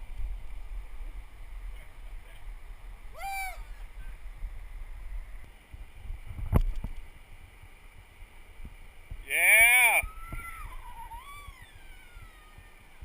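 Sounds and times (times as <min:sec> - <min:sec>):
wind: 0:00.0 - 0:13.0
short high rising call: 0:03.1 - 0:03.8.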